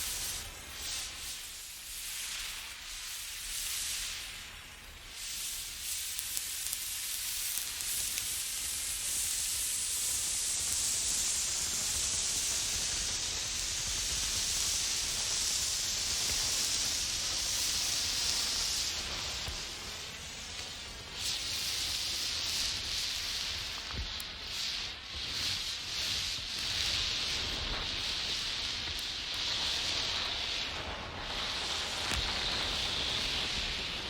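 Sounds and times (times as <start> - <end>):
flare hissing: 0.0 - 34.0.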